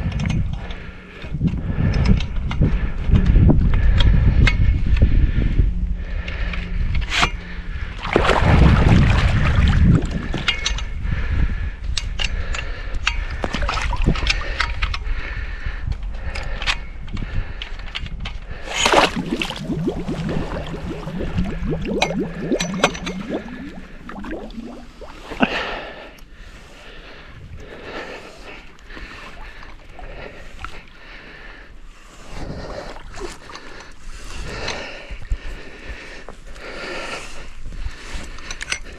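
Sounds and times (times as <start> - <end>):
lake water sloshing and splashing: 7.9 - 10.7, 18.6 - 31.3, 32.1 - 34.6.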